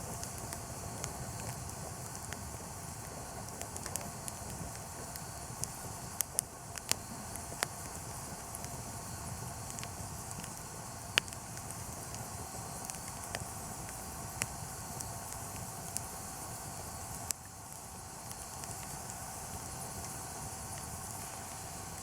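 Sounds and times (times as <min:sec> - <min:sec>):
campfire crackling and popping: 0:00.0 - 0:22.0.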